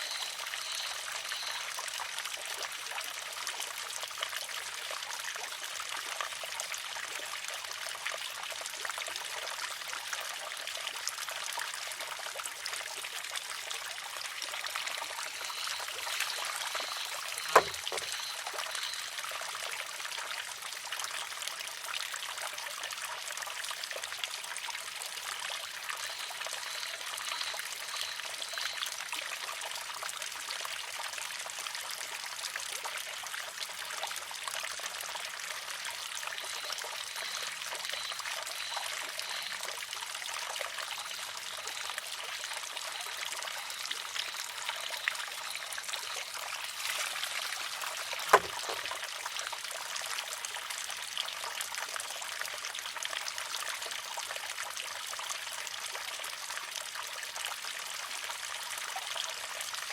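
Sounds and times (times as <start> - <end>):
water trickling: 0.0 - 59.9
sharp wooden clack: 15.6 - 18.7, 48.2 - 48.9.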